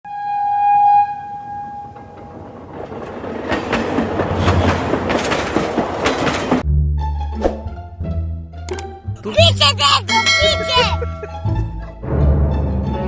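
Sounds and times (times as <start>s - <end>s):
train horn: 0.1s - 2.3s
train wheels clattering on rails: 1.7s - 6.6s.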